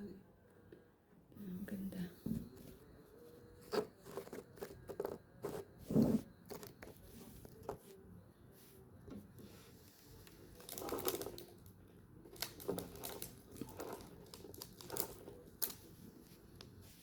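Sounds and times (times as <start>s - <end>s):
light clicks and crinkling: 10.2s - 16.8s.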